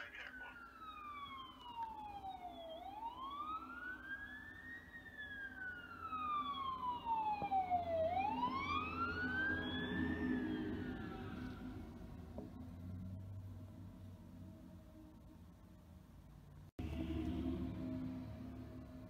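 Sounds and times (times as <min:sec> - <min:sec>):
emergency siren wailing: 0:00.0 - 0:13.1
low engine rumble: 0:11.4 - 0:19.0.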